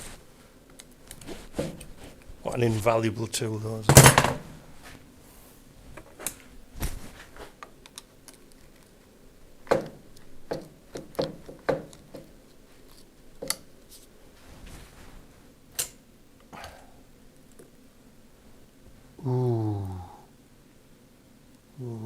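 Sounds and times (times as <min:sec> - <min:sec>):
hand tools clicking and knocking: 0:09.6 - 0:12.3.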